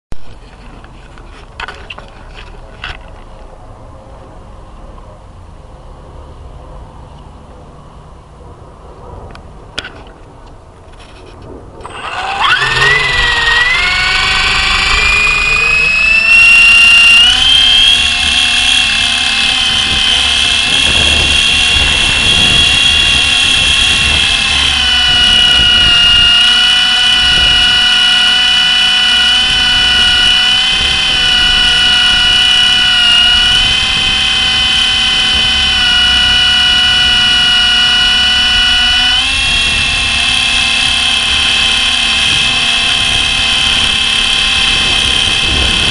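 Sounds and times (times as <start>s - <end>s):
wind rumble on microphone: 8.4s - 28.0s, 29.3s - 40.9s, 41.5s - 45.9s
rc helicopter motor whining: 11.8s - 45.9s.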